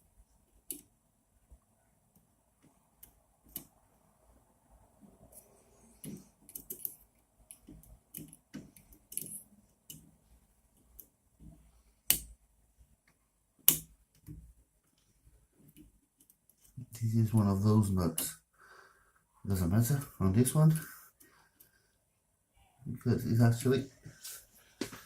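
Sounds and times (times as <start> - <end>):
small parts and tools clicking: 5.3 - 10.1.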